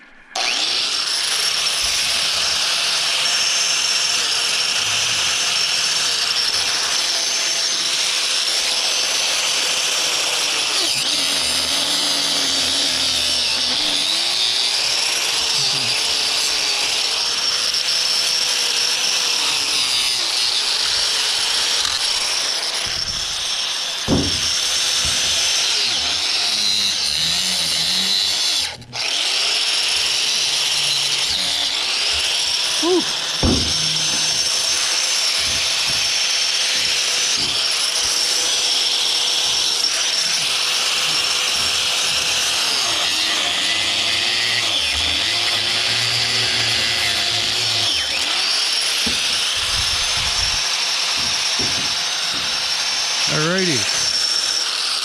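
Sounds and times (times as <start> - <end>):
power tool cutting cable: 0.0 - 55.0
sharp knock: 24.1 - 25.4, 33.4 - 34.4.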